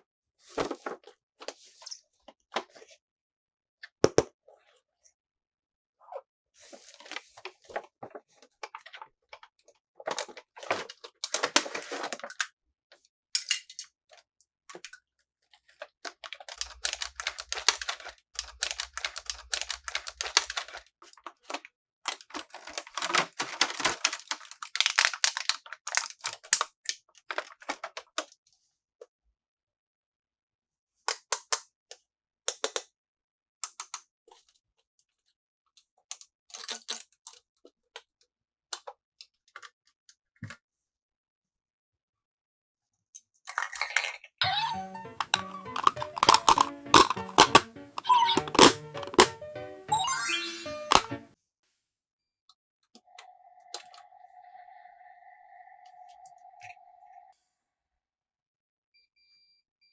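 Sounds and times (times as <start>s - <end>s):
plastic toy pieces clicking: 16.5s - 20.8s, 45.2s - 49.4s, 50.9s - 51.2s.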